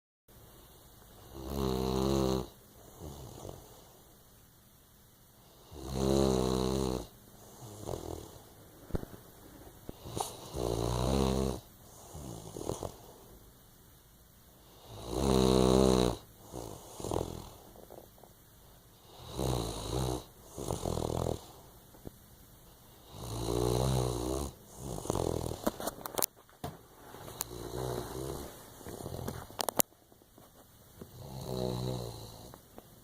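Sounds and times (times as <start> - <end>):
dog snoring: 1.2 - 3.9, 5.4 - 9.1, 9.9 - 13.2, 14.6 - 18.0, 19.0 - 21.7, 22.9 - 26.3, 27.2 - 29.8, 31.0 - 32.6.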